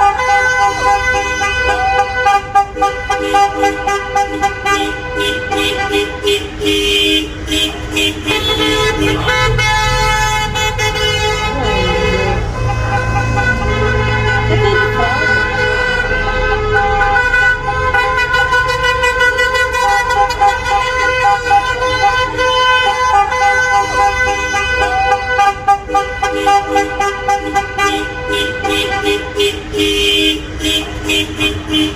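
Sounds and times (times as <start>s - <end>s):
car horns honking: 0.0s - 31.9s.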